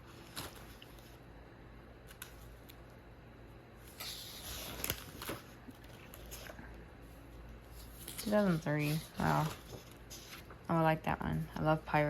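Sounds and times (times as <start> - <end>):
paper rustling: 3.9 - 6.6, 7.7 - 10.6.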